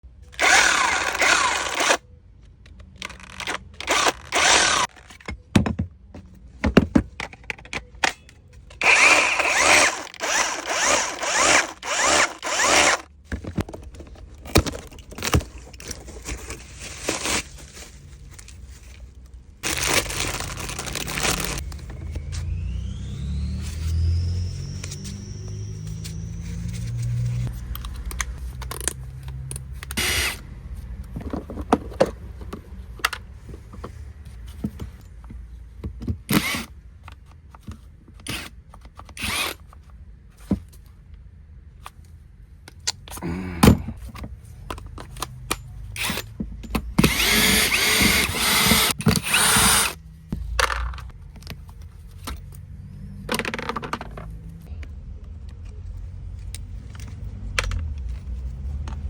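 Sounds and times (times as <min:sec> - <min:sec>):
power drill whirring: 0:00.3 - 0:02.0, 0:03.2 - 0:04.9, 0:08.8 - 0:13.1, 0:20.7 - 0:27.4, 0:30.0 - 0:30.4, 0:36.3 - 0:36.7, 0:39.2 - 0:39.6, 0:47.0 - 0:50.0
tools clicking and knocking: 0:00.4 - 0:15.9, 0:42.6 - 0:52.6, 0:53.3 - 0:54.9.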